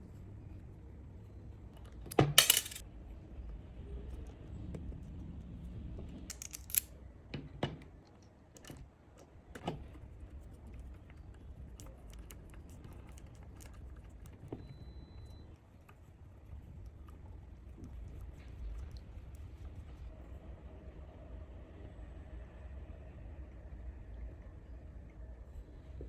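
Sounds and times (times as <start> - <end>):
low steady hum: 0.0 - 26.0
small metal parts clinking: 2.1 - 2.8, 6.3 - 6.9.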